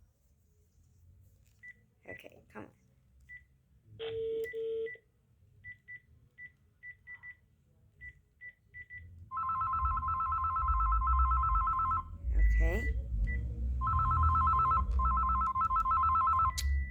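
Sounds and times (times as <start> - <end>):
low telephone beep: 4.0 - 5.0, 8.0 - 16.9
warbling electronic telephone ring: 9.3 - 12.0, 13.9 - 16.9
short high key beeps: 12.4 - 16.9.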